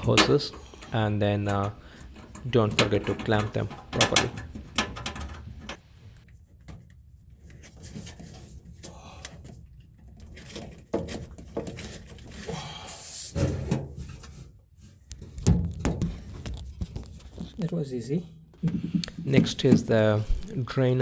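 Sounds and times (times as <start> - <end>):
plastic and rubber parts handled: 18.6 - 20.9.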